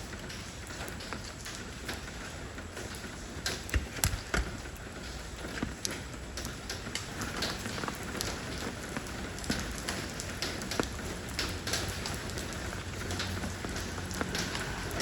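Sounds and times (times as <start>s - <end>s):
rain falling on stone: 0.0s - 15.0s.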